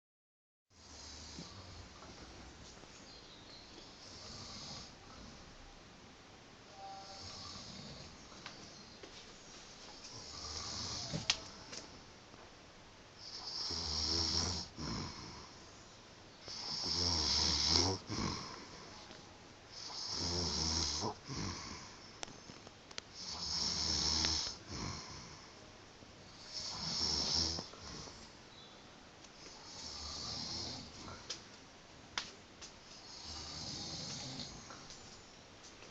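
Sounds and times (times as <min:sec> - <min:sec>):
man snoring: 0:00.8 - 0:01.9, 0:04.1 - 0:05.5, 0:07.0 - 0:08.2, 0:10.1 - 0:11.3, 0:13.2 - 0:15.6, 0:16.5 - 0:19.0, 0:19.7 - 0:22.0, 0:23.2 - 0:25.5, 0:26.4 - 0:28.2, 0:29.6 - 0:31.3, 0:33.0 - 0:34.8.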